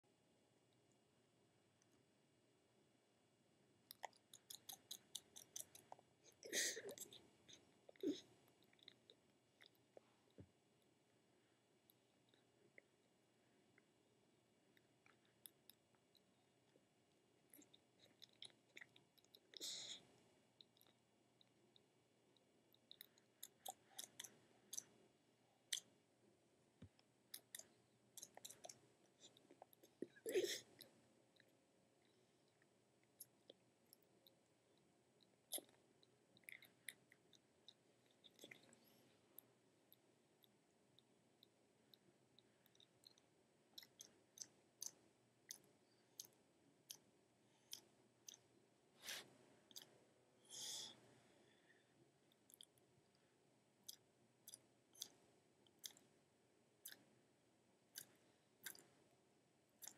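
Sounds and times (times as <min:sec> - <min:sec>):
jaws clicking while chewing: 0:03.9 - 0:06.0, 0:17.5 - 0:19.6, 0:22.8 - 0:24.9, 0:27.3 - 0:30.9, 0:36.4 - 0:38.9, 0:42.6 - 0:43.2, 0:43.8 - 0:47.0, 0:49.7 - 0:49.9, 0:53.8 - 0:56.1, 0:56.8 - 0:57.0, 0:57.9 - 0:58.9.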